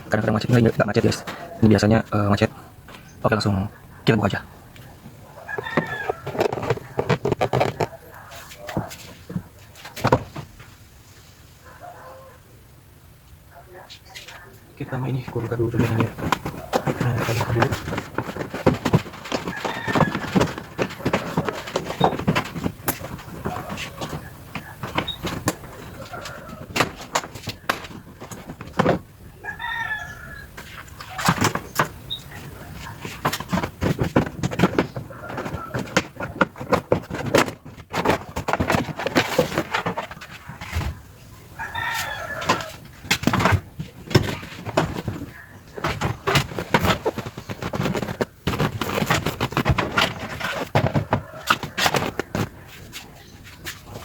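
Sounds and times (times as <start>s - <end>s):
plastic trim clicking and scraping: 5.5s - 8.0s, 15.4s - 29.0s
bird calling: 23.0s - 26.7s, 29.2s - 33.3s.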